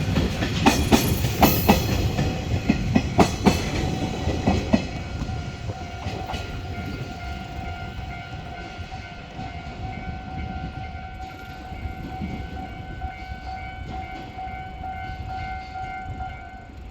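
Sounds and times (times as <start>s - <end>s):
freight train rumble: 0.0s - 16.9s
level crossing warning bell: 4.0s - 16.9s.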